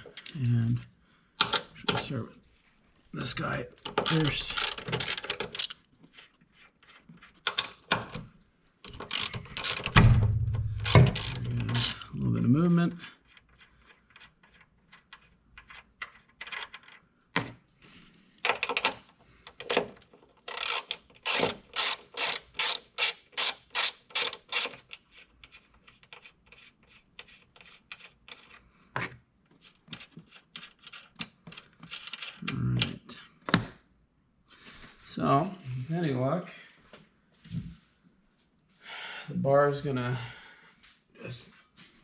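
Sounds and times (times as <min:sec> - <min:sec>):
ratchet wrench clicking: 0:04.0 - 0:05.8, 0:08.9 - 0:12.0, 0:20.4 - 0:24.8.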